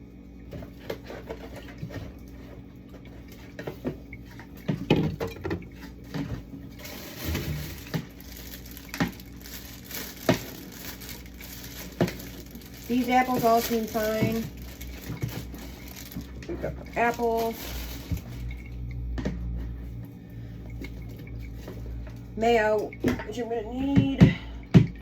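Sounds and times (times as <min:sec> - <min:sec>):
items set down clacking: 0:03.6 - 0:18.5
jars and containers knocking: 0:07.3 - 0:19.6.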